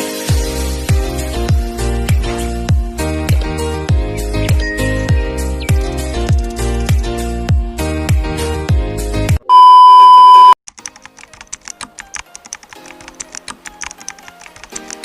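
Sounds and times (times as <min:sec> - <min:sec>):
background music with deep bass: 0:00.0 - 0:09.4
loud steady beep: 0:09.5 - 0:10.6.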